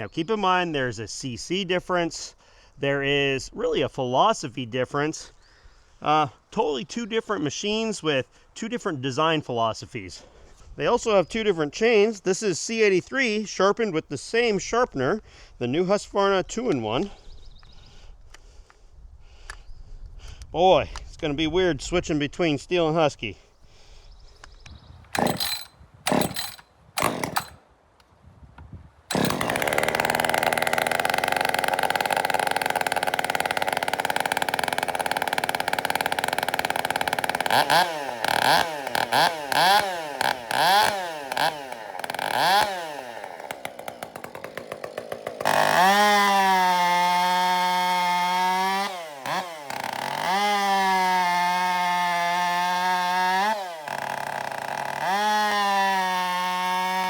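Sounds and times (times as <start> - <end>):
chainsaw cutting wood: 25.1 - 27.6, 29.1 - 57.0
chainsaw revving: 25.1 - 27.6, 29.1 - 57.0.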